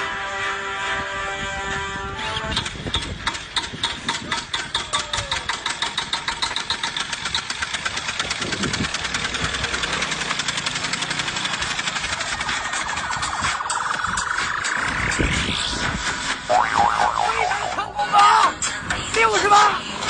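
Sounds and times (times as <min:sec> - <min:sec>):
small motorcycle engine running: 0:03.2 - 0:15.7.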